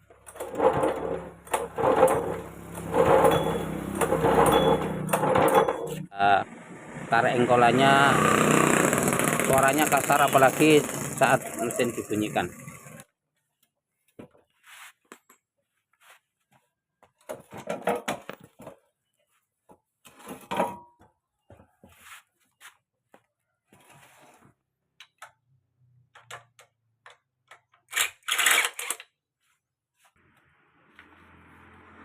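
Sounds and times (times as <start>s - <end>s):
tools clicking and rattling on engine: 0.0s - 6.1s.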